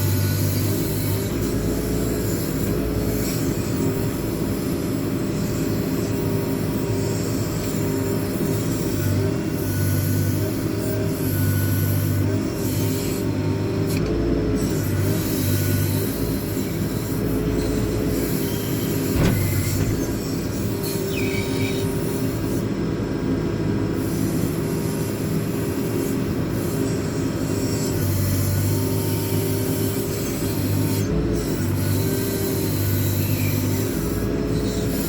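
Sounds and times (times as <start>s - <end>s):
diesel engine under load: 13.3s - 23.0s
brief high squeal: 18.4s - 21.9s
sharp metal clank: 19.0s - 20.5s.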